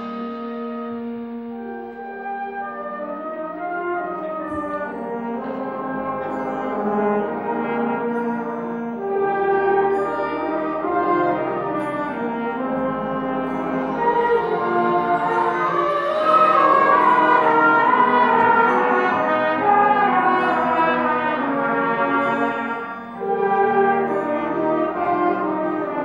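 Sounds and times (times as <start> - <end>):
concert band playing held chords: 0.0 - 26.0.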